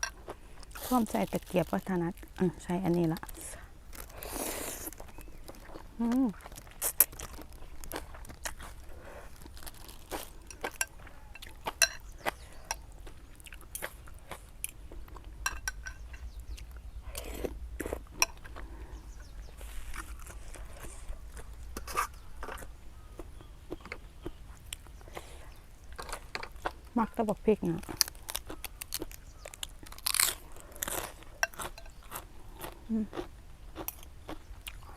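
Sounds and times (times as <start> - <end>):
chewing and crunching: 0.0 - 34.9
steady low hum: 0.0 - 34.9
chopsticks and spoon clinking bowl: 10.5 - 12.8, 15.4 - 16.4, 31.4 - 32.1.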